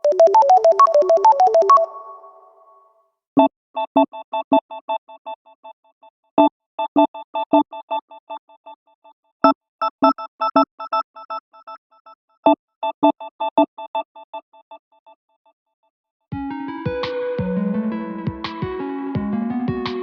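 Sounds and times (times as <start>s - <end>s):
synth-bell ringtone: 0.0s - 2.8s.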